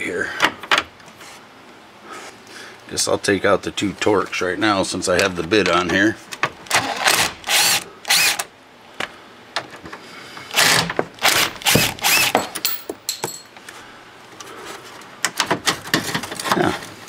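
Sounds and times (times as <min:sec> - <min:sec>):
power drill bursts: 0:06.8 - 0:08.5, 0:10.5 - 0:12.4.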